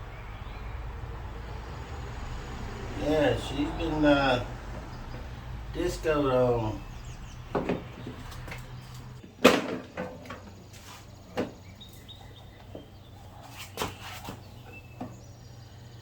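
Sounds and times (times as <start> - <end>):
tools and parts knocking: 7.5 - 10.6.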